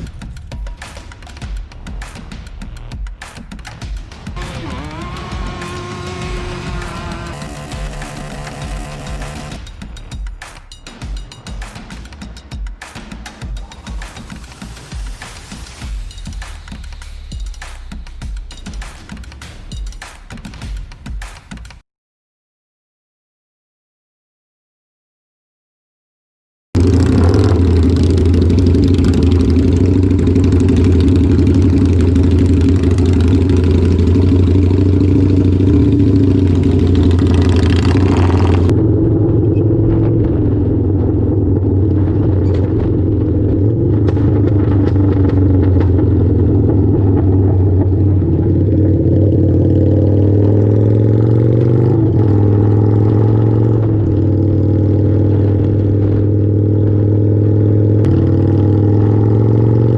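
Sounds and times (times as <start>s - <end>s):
motorcycle engine running: 4.4s - 9.6s, 26.8s - 59.9s.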